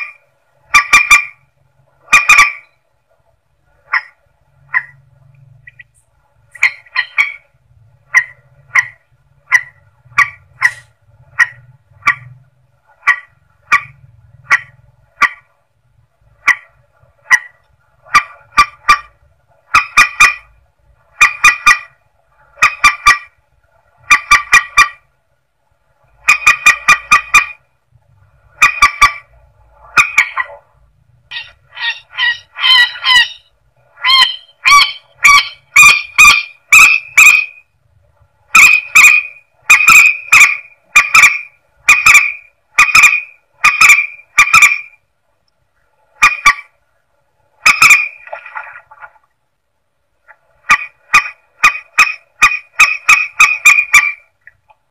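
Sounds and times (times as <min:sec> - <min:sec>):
bird honking call: 0:31.3 - 0:37.6, 0:38.5 - 0:44.9.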